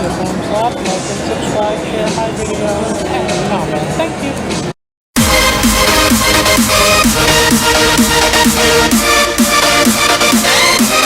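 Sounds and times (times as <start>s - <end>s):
electronic music with steady beat: 5.2s - 11.0s
rising synth sweep: 5.2s - 11.0s.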